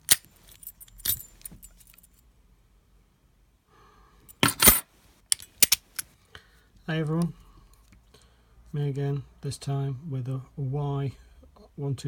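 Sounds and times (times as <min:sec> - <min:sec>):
padlock clinking and rattling: 0:00.0 - 0:02.2, 0:04.3 - 0:06.1
padlock jangling: 0:00.0 - 0:02.2, 0:04.3 - 0:06.1.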